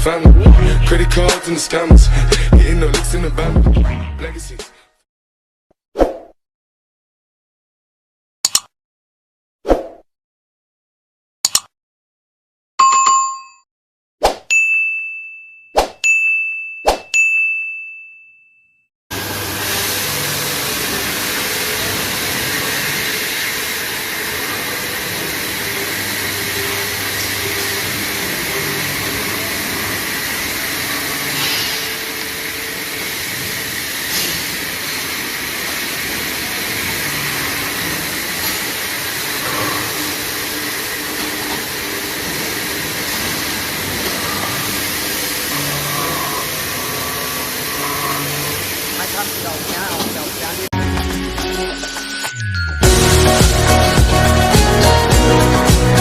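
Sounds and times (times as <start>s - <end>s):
metal-cutting machine hissing: 19.1s - 50.7s.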